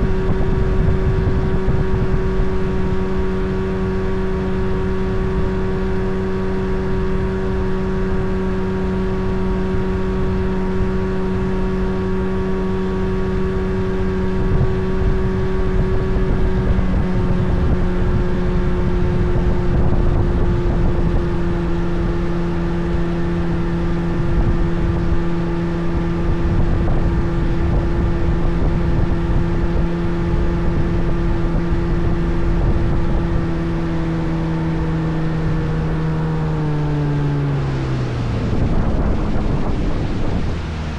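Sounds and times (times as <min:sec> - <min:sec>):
boat motor running: 0:00.0 - 0:40.9
low rushing noise: 0:00.0 - 0:40.9.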